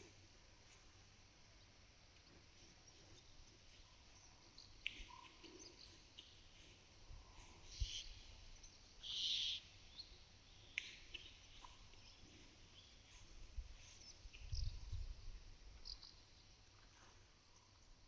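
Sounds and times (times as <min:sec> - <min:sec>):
small birds calling: 0:02.2 - 0:14.9.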